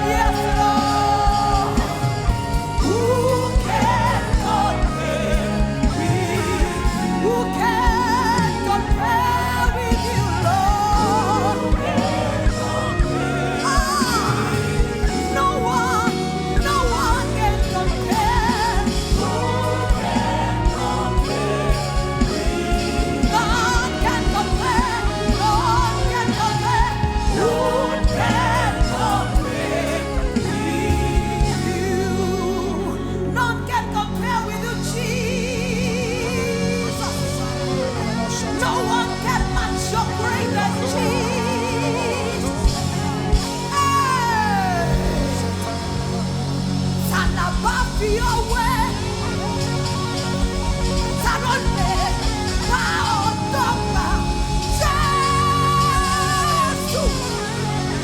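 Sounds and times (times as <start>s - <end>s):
band with steady beat: 0.0s - 31.8s, 44.8s - 58.0s
gospel singing with vibrato: 0.0s - 58.0s.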